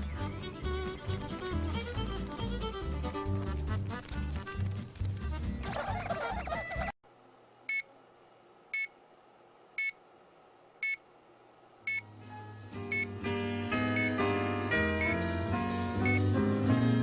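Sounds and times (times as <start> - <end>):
music: 0.0 - 6.9, 11.9 - 17.0.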